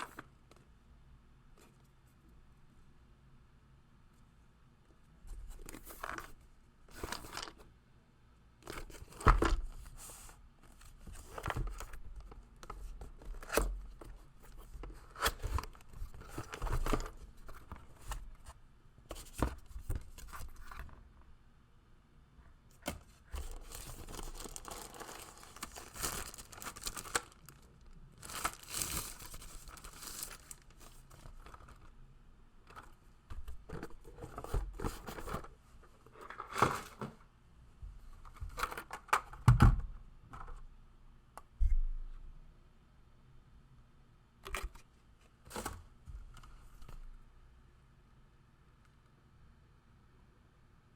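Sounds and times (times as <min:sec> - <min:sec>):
wrapping tearing and crinkling: 0:23.4 - 0:31.8.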